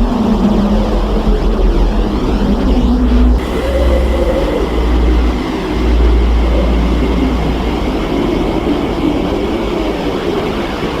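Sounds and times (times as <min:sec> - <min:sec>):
deep steady rumble: 0:01.8 - 0:10.3
wavering humming tones: 0:02.8 - 0:10.4.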